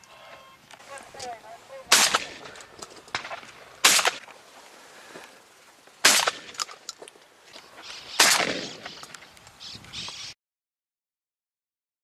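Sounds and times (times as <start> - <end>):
gunshots: 1.9 - 4.3, 6.0 - 6.7, 8.2 - 9.0.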